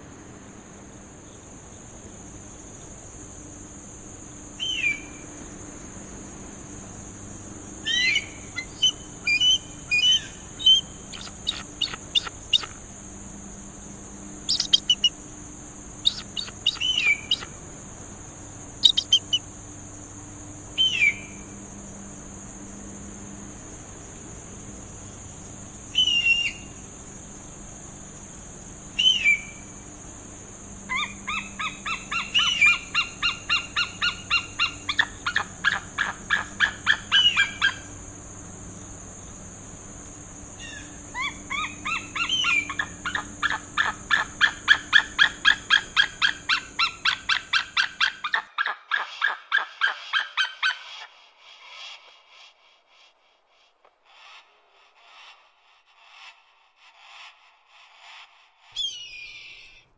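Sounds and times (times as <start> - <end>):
high-pitched hiss: 0.0 - 48.0.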